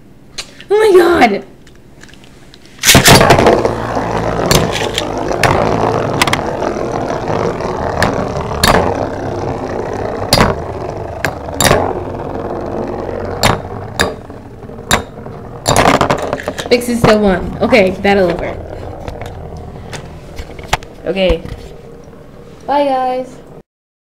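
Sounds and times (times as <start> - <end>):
spinning tops clacking: 2.8 - 21.0
spinning tops whirring: 2.8 - 22.4.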